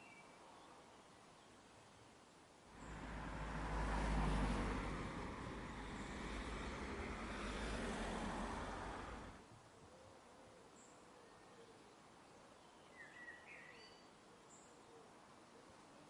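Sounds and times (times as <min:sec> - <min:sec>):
car driving past: 0:02.7 - 0:09.4.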